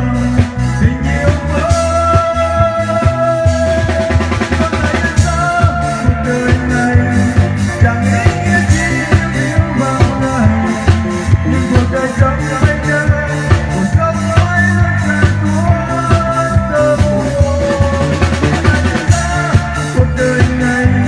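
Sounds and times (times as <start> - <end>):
band playing instrumental: 0.0 - 21.0
bass line: 0.0 - 21.0
bass drum and snare hits: 0.4 - 21.0.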